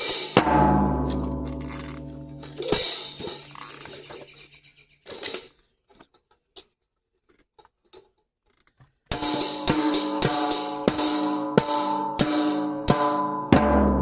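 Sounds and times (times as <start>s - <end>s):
fast loud drumming: 0.0s - 3.4s, 9.1s - 14.0s
drum hits: 0.0s - 3.5s, 9.1s - 14.0s.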